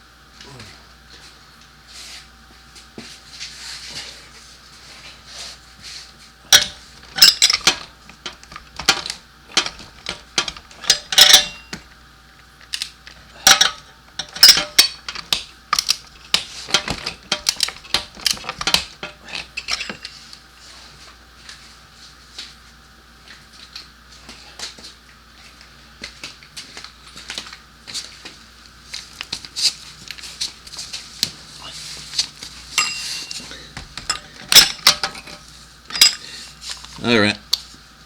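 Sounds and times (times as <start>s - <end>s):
metal hand tools clinking: 32.8s - 36.3s.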